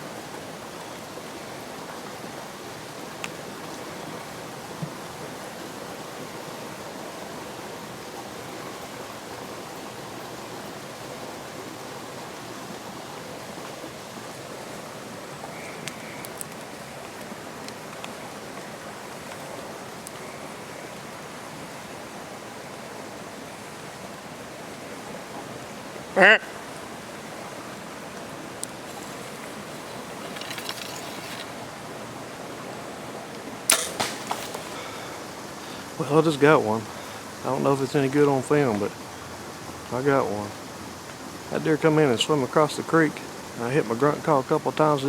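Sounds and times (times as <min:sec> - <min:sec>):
creek water rushing: 0:00.0 - 0:45.0
rain: 0:00.0 - 0:45.0
faint ticks: 0:15.5 - 0:20.4.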